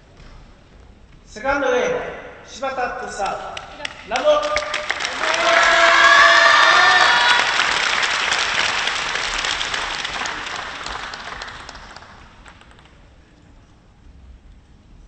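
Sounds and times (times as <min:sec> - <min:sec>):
crowd applause: 0:03.8 - 0:13.0.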